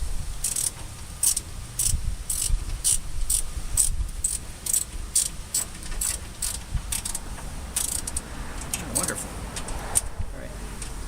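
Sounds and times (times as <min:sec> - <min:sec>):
socket ratchet wrench clicking: 0:00.4 - 0:07.2, 0:07.8 - 0:08.8.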